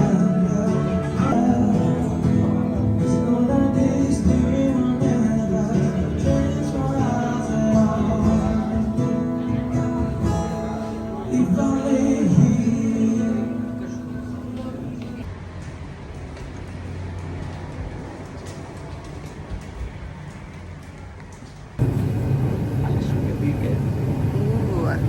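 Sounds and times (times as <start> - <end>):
acoustic guitar plucked and strummed: 0.0 - 15.2
person singing: 0.0 - 15.3.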